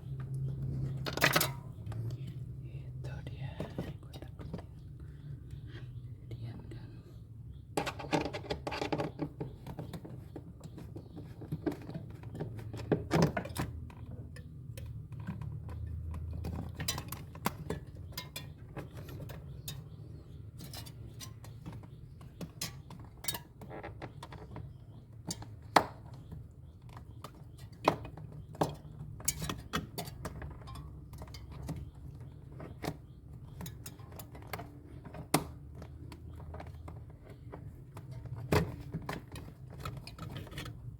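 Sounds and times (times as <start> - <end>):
tools clinking and knocking: 1.0 - 1.9, 7.8 - 10.0.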